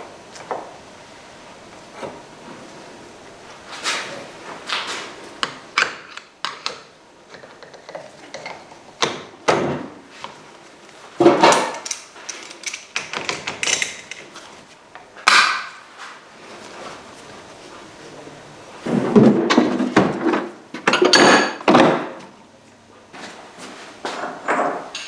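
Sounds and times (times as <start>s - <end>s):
hand tools and metal parts clattering: 10.9s - 14.6s, 19.1s - 22.2s.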